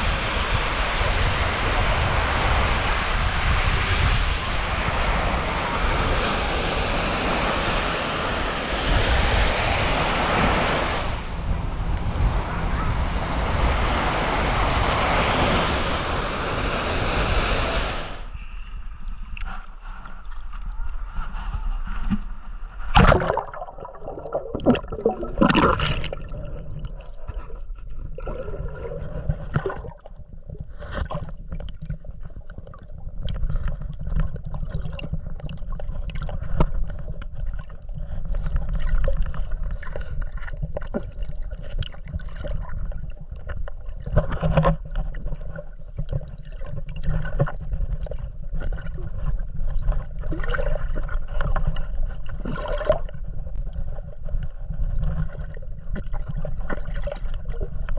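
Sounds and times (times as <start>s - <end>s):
steady low rumble: 0.0s - 30.6s
water sloshing and gurgling: 0.0s - 57.9s.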